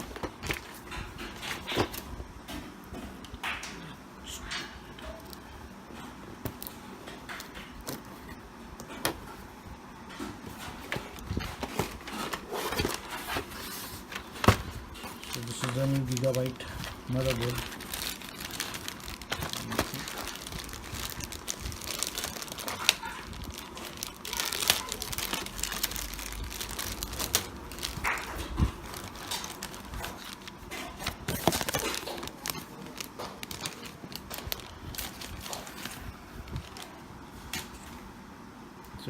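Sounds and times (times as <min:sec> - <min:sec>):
plastic packaging crinkling: 0:10.6 - 0:37.9
small clicks and crackles: 0:15.0 - 0:36.9.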